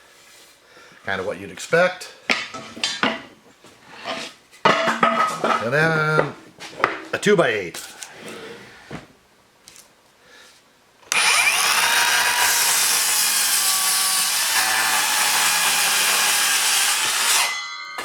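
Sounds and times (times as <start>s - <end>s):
miter saw cutting wood: 11.1s - 17.6s.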